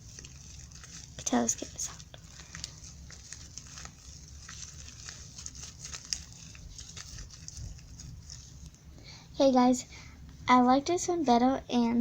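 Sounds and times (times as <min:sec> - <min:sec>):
faint crackles and small clicks: 0:00.0 - 0:08.8
hands squishing slime: 0:00.0 - 0:08.8.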